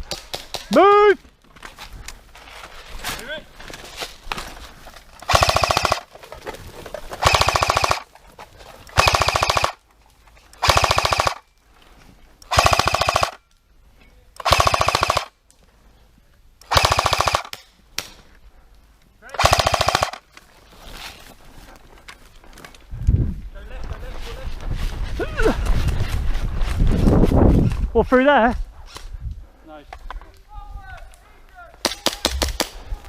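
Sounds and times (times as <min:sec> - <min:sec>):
airsoft gun full-auto bursts: 0:05.2 - 0:06.1, 0:07.2 - 0:08.0, 0:09.0 - 0:09.8, 0:10.6 - 0:11.4, 0:12.5 - 0:13.4, 0:14.4 - 0:15.3, 0:16.6 - 0:17.6, 0:19.4 - 0:20.2.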